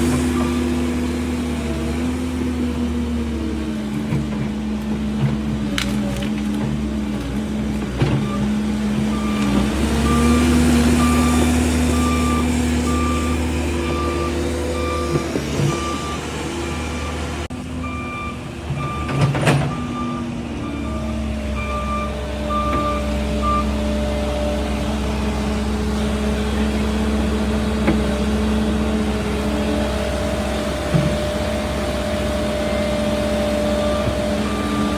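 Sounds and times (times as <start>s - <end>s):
excavator diesel engine under load: 0.0s - 34.9s
travel alarm beeping: 11.0s - 23.8s, 33.8s - 34.9s.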